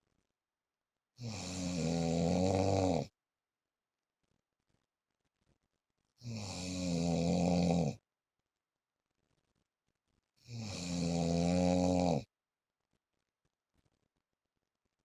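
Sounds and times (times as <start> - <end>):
man snoring: 1.2 - 3.1, 6.2 - 8.0, 10.5 - 12.3.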